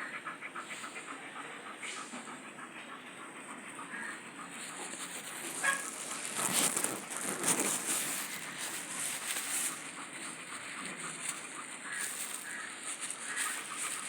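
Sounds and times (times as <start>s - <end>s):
dog eating noisily: 4.5s - 14.0s.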